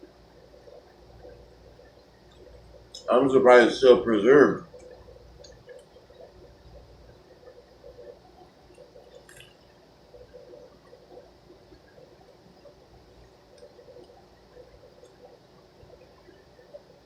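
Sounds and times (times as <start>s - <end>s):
small clicks: 7.1s - 12.0s, 13.5s - 16.9s
wet chewing sounds: 7.4s - 12.0s.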